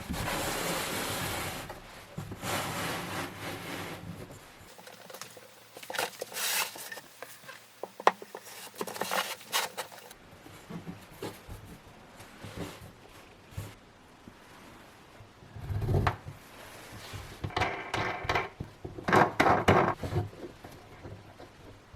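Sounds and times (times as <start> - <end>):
small hard parts clicking: 4.7 - 10.2.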